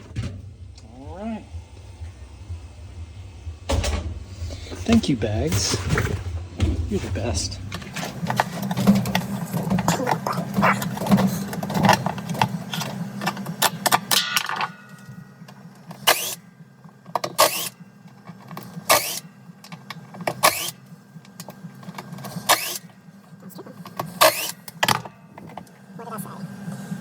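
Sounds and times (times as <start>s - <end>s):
steady hum: 0.0s - 27.0s
sharp tool strokes on metal parts: 22.4s - 22.9s.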